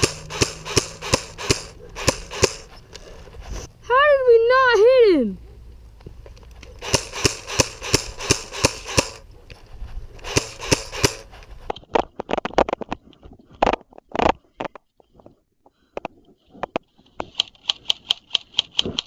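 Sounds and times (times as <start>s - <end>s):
airsoft gun firing pops: 0.0s - 2.7s, 6.7s - 9.2s, 10.2s - 11.3s
sharp clicks: 0.0s - 3.0s, 6.3s - 9.2s, 10.2s - 11.3s.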